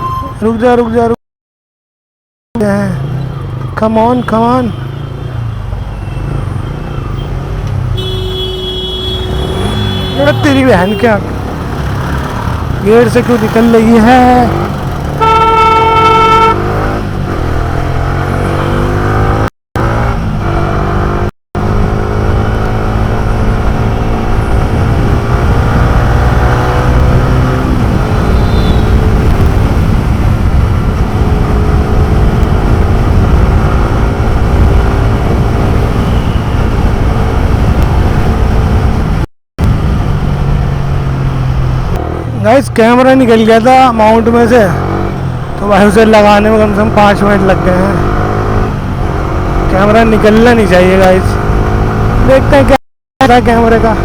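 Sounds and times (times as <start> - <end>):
vehicle horn: 7.9 - 11.2, 15.2 - 16.8, 28.1 - 29.1
motorcycle engine accelerating: 11.2 - 42.5, 44.0 - 54.0
wind on microphone: 21.8 - 40.7.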